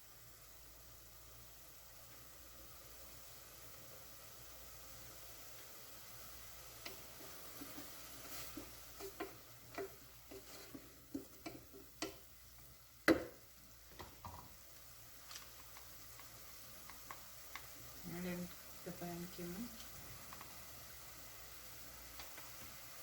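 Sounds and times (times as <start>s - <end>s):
faint sizzle of frying: 0.0s - 23.0s
spoon scraping a frying pan: 6.8s - 12.2s
spoon knocking on pan: 8.6s - 12.3s, 13.0s - 14.6s.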